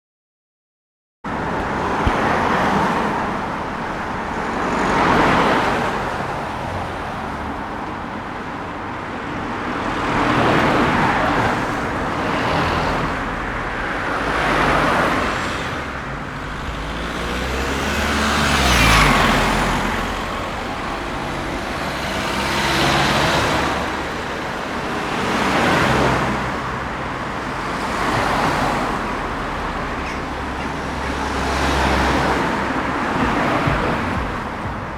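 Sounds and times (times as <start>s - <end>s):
cars passing on street: 1.3s - 34.9s
vehicle with deeper engine passing: 10.0s - 34.9s.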